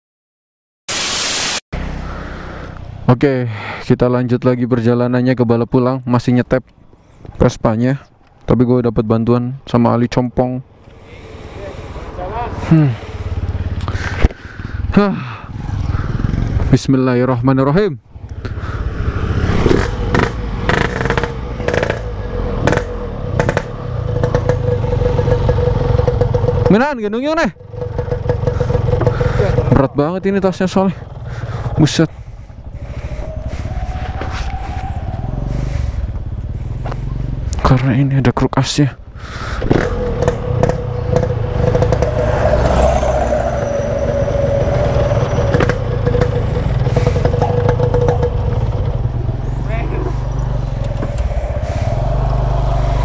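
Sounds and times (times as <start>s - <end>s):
motorcycle engine running: 11.3s - 16.8s, 18.0s - 37.9s, 39.1s - 53.0s
bursts of rushing noise: 39.6s - 48.7s.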